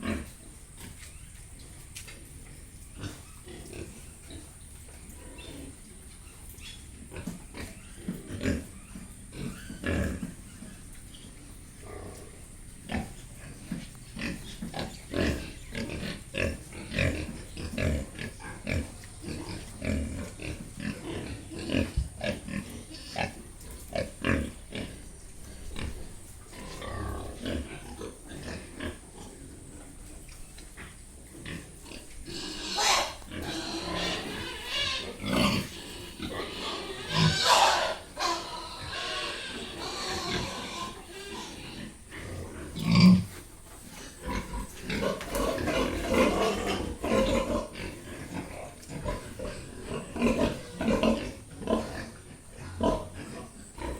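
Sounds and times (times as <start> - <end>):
pigs grunting: 0.0 - 1.1, 1.9 - 53.9
pigs high-pitched calls: 0.0 - 53.9.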